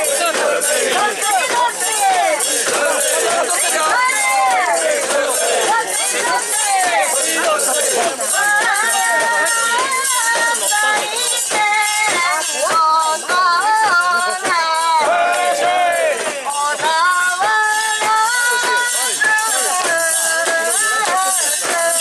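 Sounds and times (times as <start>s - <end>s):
continuous jingling: 0.0s - 22.0s.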